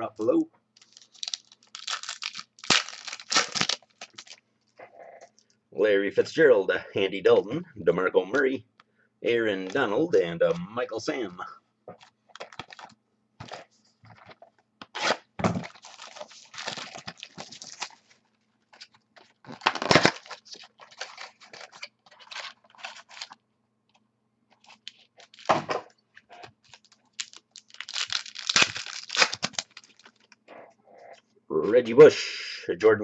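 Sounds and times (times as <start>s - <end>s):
cards rustling: 0.8s - 4.4s, 12.0s - 23.4s, 26.4s - 30.4s
foil packs tearing: 0.8s - 4.4s, 14.9s - 18.0s, 19.5s - 23.4s, 26.6s - 30.3s.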